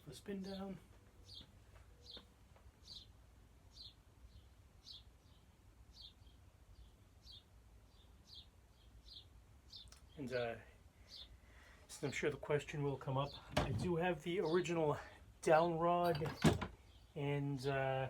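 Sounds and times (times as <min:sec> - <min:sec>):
small bird chirping: 0:00.3 - 0:10.3, 0:11.0 - 0:11.4.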